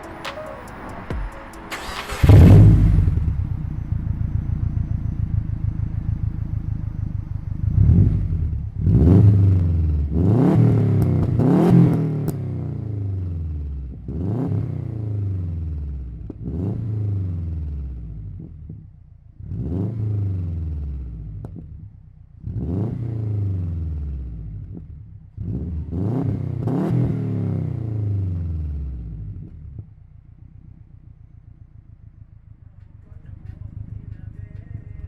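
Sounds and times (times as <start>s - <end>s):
car engine idling and revving: 0.0s - 35.0s.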